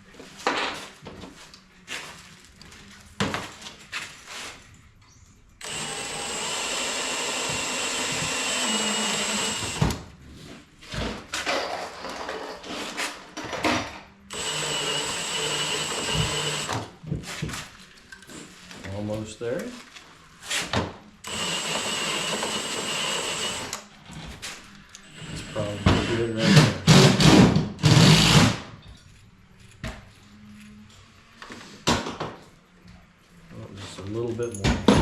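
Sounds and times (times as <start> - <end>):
power drill whining: 5.6 - 10.0, 14.3 - 16.8, 21.2 - 23.8, 25.1 - 27.1.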